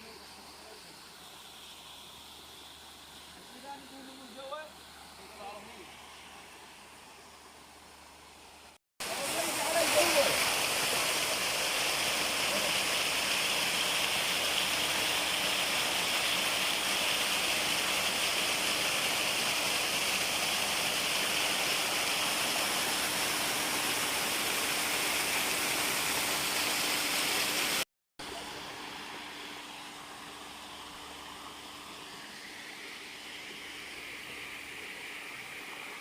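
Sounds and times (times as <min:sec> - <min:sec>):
flowing water rushing: 0:00.0 - 0:36.0
faint steady hum: 0:28.2 - 0:36.0.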